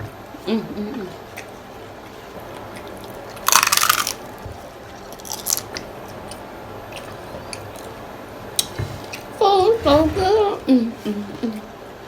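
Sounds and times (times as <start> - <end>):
chewing crunch: 1.1 - 8.0
crunchy bite into taco: 2.6 - 4.4.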